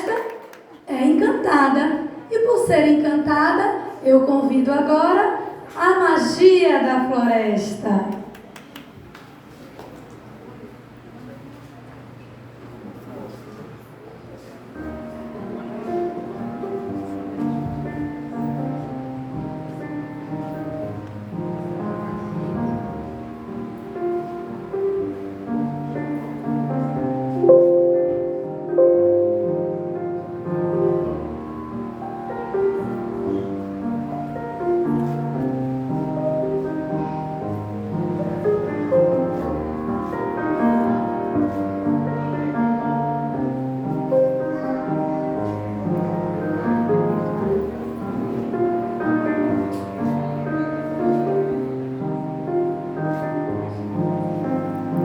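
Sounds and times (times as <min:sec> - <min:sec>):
piano melody over bass notes: 0:14.8 - 0:55.0.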